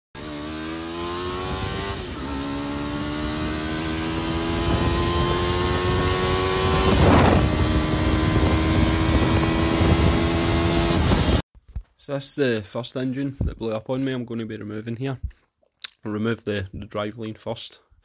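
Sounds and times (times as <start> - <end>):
motorcycle engine accelerating: 0.2 - 11.4
short rushing noise: 6.9 - 7.5.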